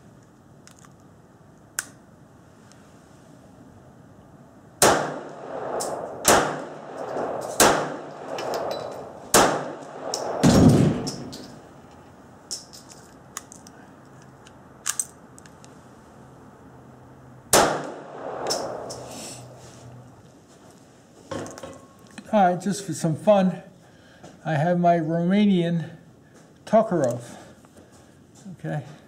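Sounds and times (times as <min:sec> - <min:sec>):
pistol shots: 0:04.8 - 0:11.5, 0:17.5 - 0:19.1
deep boom: 0:05.0 - 0:11.3.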